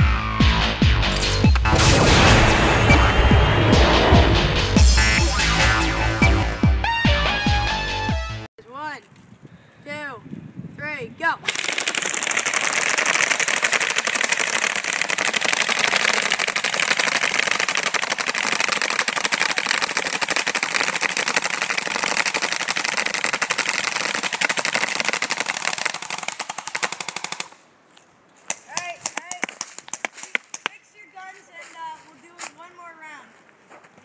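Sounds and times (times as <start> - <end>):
airsoft guns firing full auto: 11.5 - 27.6.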